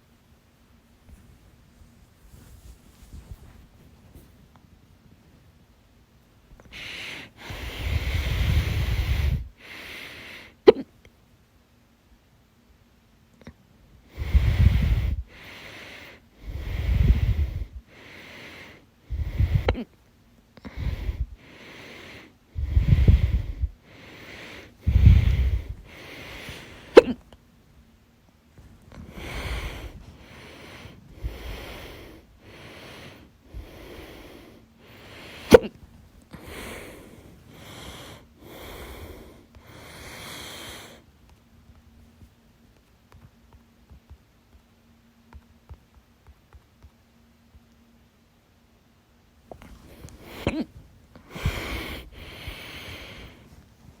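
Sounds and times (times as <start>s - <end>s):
heavy breathing into microphone: 6.6s - 10.6s, 14.1s - 19.8s, 20.7s - 27.2s, 28.6s - 35.6s, 36.3s - 41.1s, 49.5s - 54.0s
woman hiccuping: 10.7s - 10.9s, 35.5s - 35.8s.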